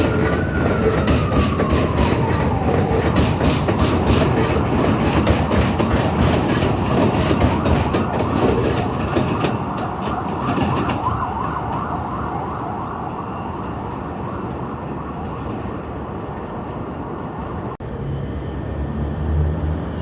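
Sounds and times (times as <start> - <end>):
wavering siren-like wail: 0.0 - 5.6, 7.0 - 16.2
train wheels clacking over rail joints: 0.0 - 11.2
train rumbling with high whine: 0.0 - 20.0.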